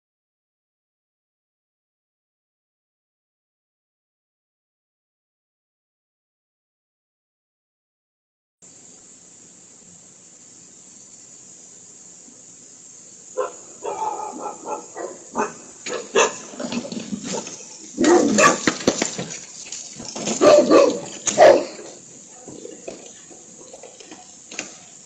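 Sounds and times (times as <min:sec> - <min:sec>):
dog barking: 0:13.4 - 0:16.5, 0:17.3 - 0:18.8, 0:20.3 - 0:22.0.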